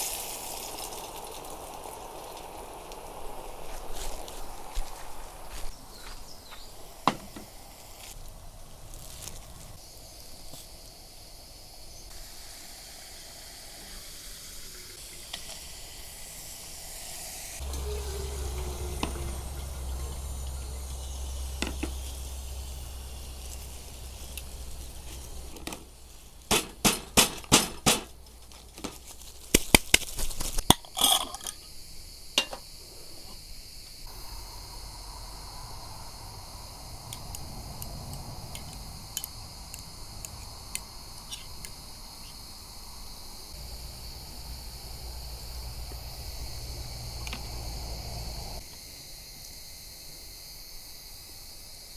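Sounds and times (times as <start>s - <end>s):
steady low hum: 15.0s - 27.2s, 34.0s - 48.6s
dishes and utensils clinking: 30.7s - 31.6s.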